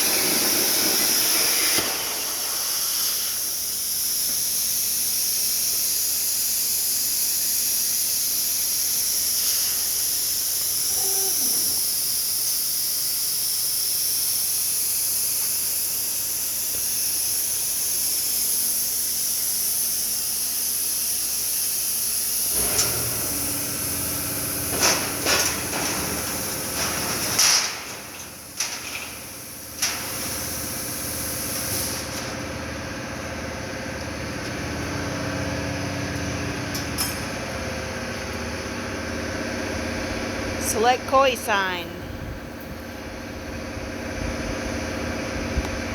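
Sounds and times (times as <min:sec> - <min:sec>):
plasma cutter hissing: 0:00.0 - 0:32.3.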